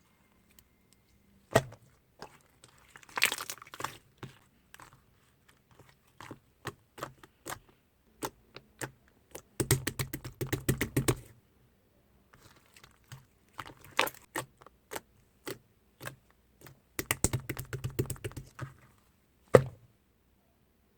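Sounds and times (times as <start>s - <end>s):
slime rapid crackling: 16.0s - 18.6s.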